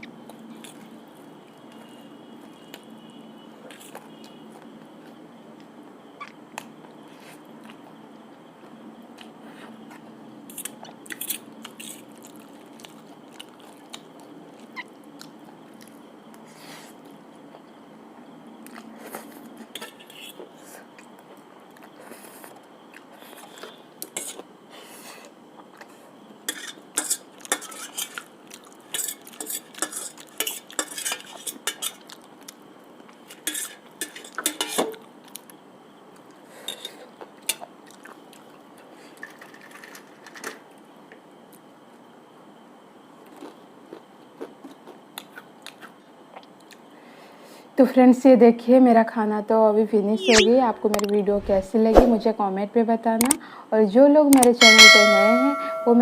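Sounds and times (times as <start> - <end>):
person chewing: 43.3 - 46.8
cutlery clinking on a plate: 54.6 - 56.0.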